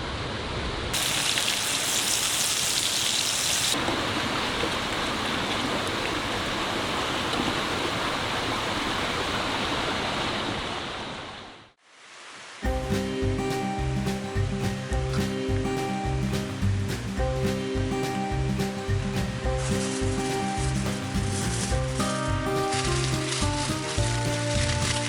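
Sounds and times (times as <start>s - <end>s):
steak sizzling in a pan: 1.0s - 3.8s.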